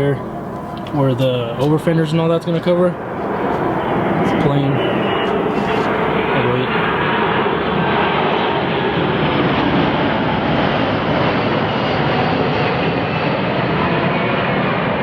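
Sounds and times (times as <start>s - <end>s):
loud rushing noise: 0.0s - 10.2s.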